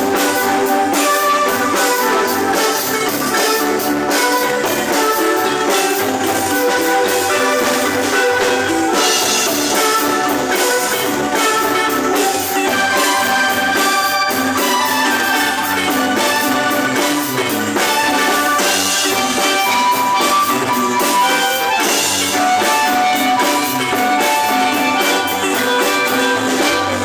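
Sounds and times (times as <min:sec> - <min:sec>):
drums keeping a beat: 0:00.0 - 0:27.0
marimba band playing: 0:00.0 - 0:27.0.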